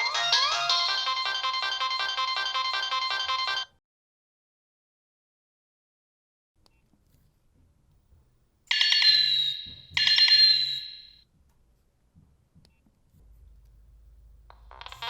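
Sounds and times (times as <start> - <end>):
bell-like phone ringtone: 0.0 - 3.8, 8.7 - 11.2.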